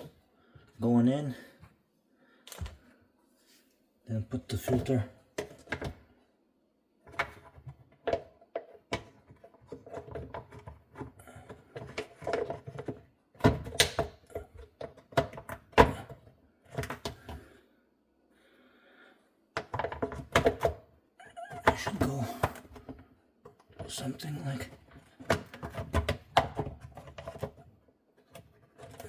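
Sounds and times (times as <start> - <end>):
plastic parts knocking and rattling: 4.5 - 6.1, 7.0 - 17.6, 19.5 - 29.0.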